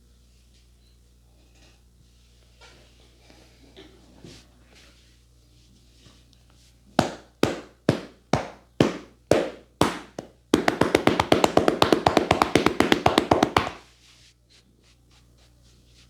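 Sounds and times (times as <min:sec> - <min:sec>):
hands slapping a head: 0:07.0 - 0:13.8
rapid chopping taps: 0:07.0 - 0:13.8.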